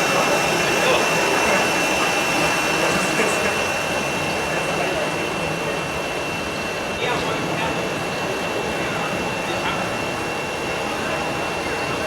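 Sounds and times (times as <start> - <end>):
busy hall din: 0.0 - 12.0
faint voices: 0.0 - 12.0.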